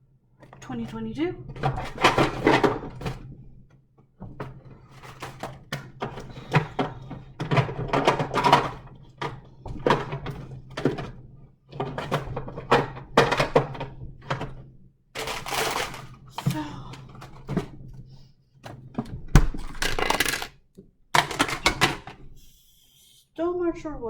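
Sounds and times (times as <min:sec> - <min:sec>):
food containers knocking: 0:19.0 - 0:20.5, 0:21.2 - 0:22.2.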